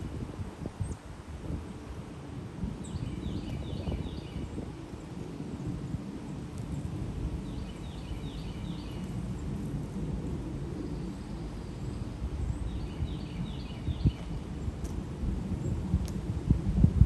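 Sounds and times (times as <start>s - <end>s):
steady low rumble: 0.0s - 17.0s
bird chirping: 7.4s - 9.2s, 10.8s - 14.4s.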